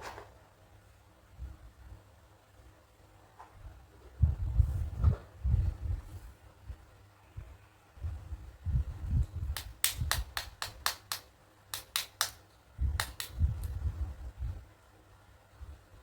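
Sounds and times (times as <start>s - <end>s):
plastic toy pieces clicking: 9.6s - 12.4s, 13.0s - 13.4s.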